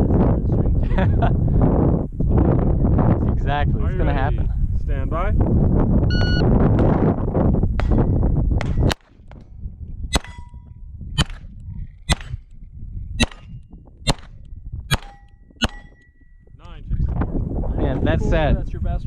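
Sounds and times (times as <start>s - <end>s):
pistol shots: 8.6s - 9.4s, 10.1s - 10.6s, 11.2s - 11.5s, 12.1s - 12.4s, 13.2s - 16.2s
steel plate clanging: 10.2s - 10.7s, 14.9s - 16.4s.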